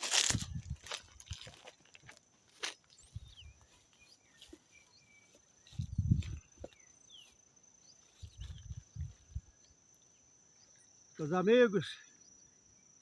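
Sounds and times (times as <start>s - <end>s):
bird chirps: 2.6s - 11.4s.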